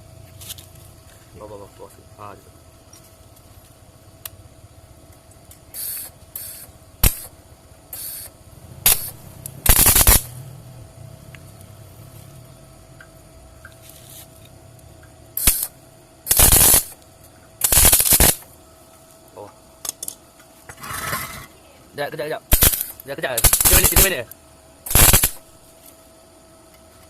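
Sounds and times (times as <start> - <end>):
sharp clicks: 5.1 - 7.3
aerosol spray hissing: 5.7 - 7.3, 7.9 - 8.3, 15.4 - 15.7, 16.3 - 17.0, 17.6 - 18.4, 22.5 - 24.1, 24.9 - 25.4.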